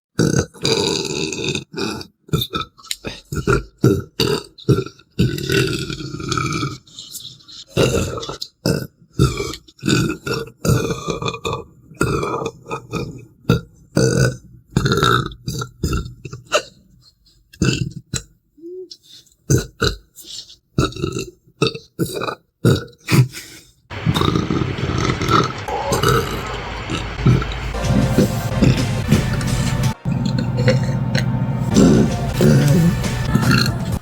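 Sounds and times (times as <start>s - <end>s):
person belching: 0.2s - 6.5s, 23.9s - 27.9s, 28.5s - 34.0s.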